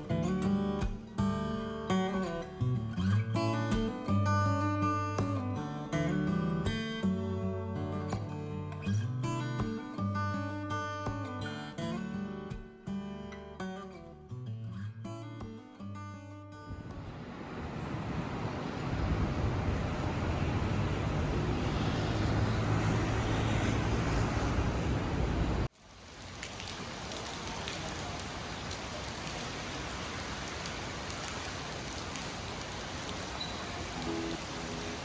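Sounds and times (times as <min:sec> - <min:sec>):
low rumbling wash: 0:16.8 - 0:25.7.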